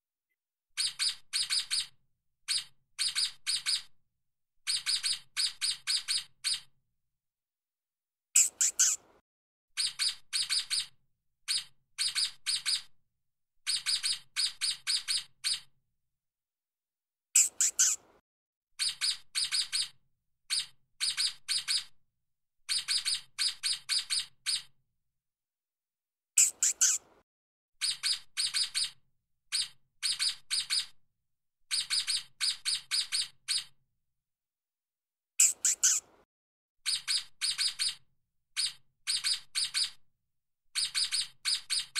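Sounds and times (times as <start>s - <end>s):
stoat chirping: 8.4s - 9.1s, 17.4s - 18.1s, 26.4s - 27.1s, 35.4s - 36.1s.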